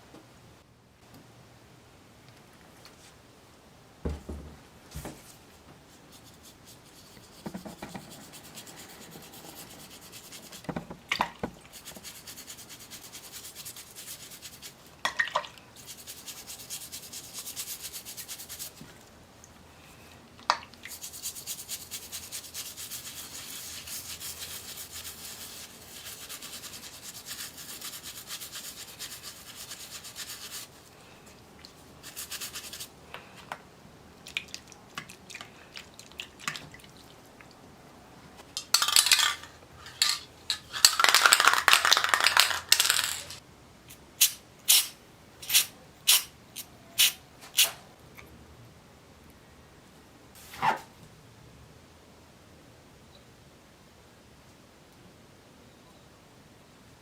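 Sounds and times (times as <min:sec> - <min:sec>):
rapid rubbing strokes: 0:05.9 - 0:10.7, 0:11.7 - 0:14.8, 0:15.8 - 0:18.8, 0:20.9 - 0:30.9, 0:32.0 - 0:33.0.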